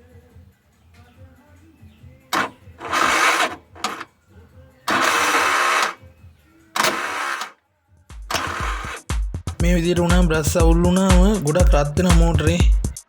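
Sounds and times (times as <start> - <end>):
starter motor spinning: 2.4 - 4.1, 4.9 - 6.0, 6.8 - 7.6, 8.3 - 9.1
background music with low beat: 8.1 - 13.0.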